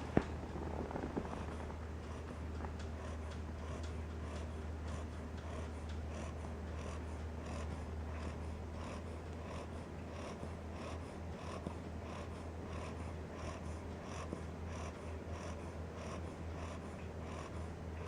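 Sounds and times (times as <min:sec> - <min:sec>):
puppy snoring: 0:00.0 - 0:18.0
steady low hum: 0:00.0 - 0:18.0.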